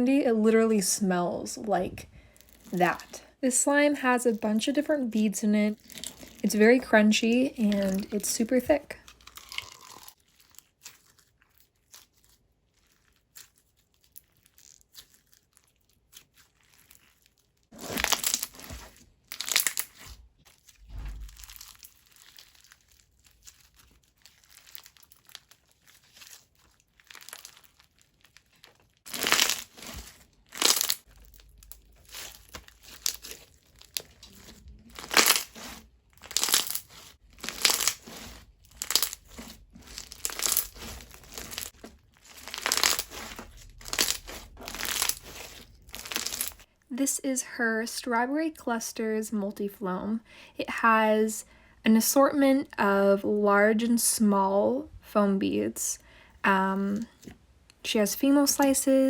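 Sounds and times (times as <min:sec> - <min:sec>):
crunchy slime squished by hand: 0:05.7 - 0:46.7.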